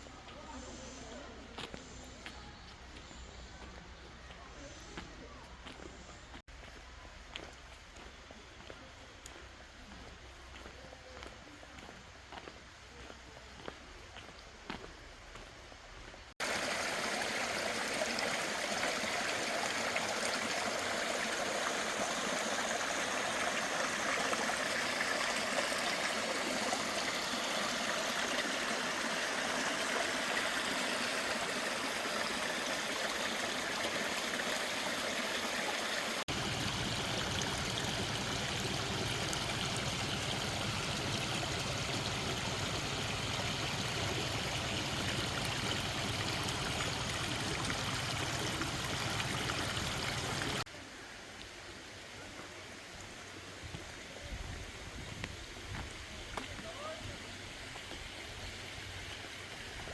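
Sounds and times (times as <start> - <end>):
stream rushing over rocks: 16.4 - 50.9.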